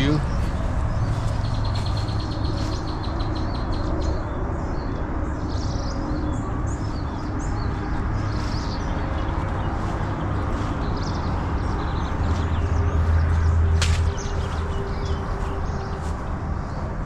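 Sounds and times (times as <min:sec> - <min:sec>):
birds chirping: 0:00.0 - 0:17.0
steady low rumble: 0:00.0 - 0:17.0.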